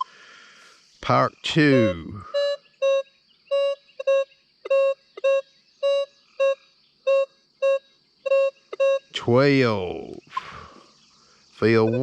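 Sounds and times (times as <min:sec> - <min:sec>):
metal detector short beeps: 0:01.7 - 0:09.1, 0:11.7 - 0:12.0.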